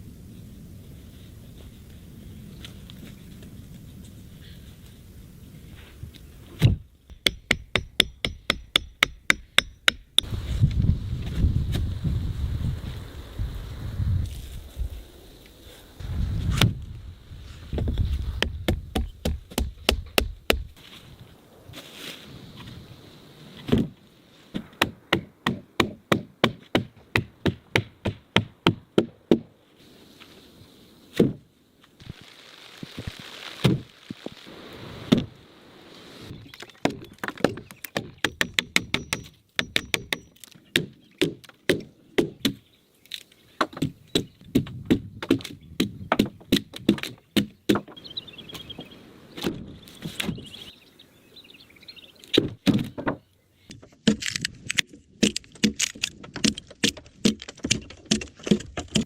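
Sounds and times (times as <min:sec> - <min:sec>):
axe chopping log: 0:18.4 - 0:20.7, 0:24.6 - 0:29.5, 0:36.8 - 0:42.6, 0:43.6 - 0:47.9, 0:55.2 - 0:59.0.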